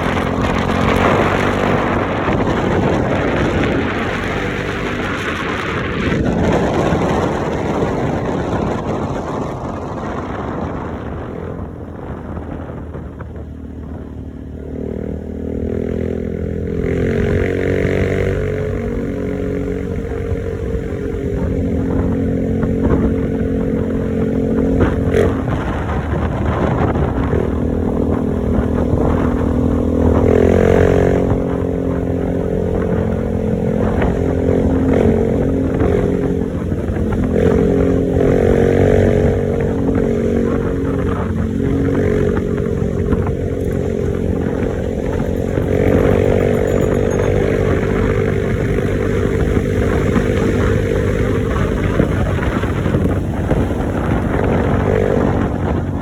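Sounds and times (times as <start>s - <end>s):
small engine revving: 0.0s - 9.0s, 14.6s - 56.0s.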